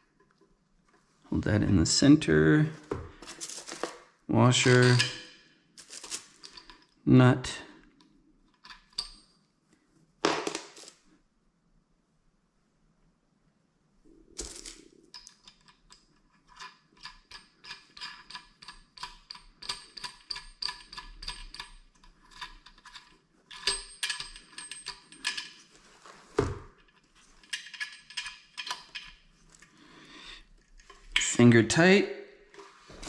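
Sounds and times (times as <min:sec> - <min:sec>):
nut threading onto metal bolt: 0:15.2 - 0:25.6, 0:26.9 - 0:29.3.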